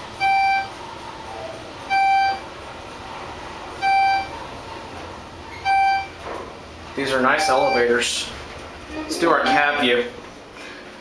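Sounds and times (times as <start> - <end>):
elevator cab hum: 0.0 - 11.0
elevator electronic beep: 0.1 - 2.6, 3.8 - 4.4, 5.5 - 6.2, 7.3 - 8.1, 8.9 - 10.0.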